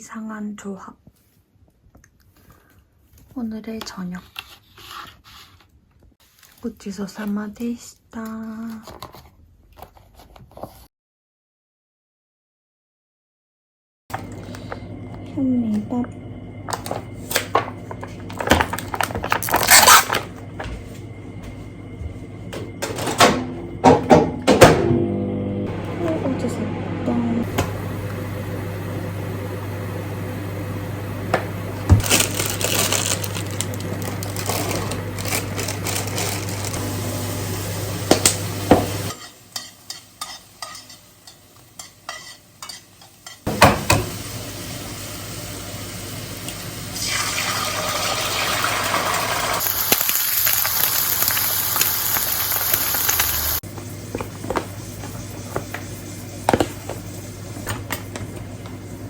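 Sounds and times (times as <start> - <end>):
appliance hum: 14.1 - 59.0
utensils and dishes clinking: 38.2 - 44.2
hissing: 49.6 - 53.6.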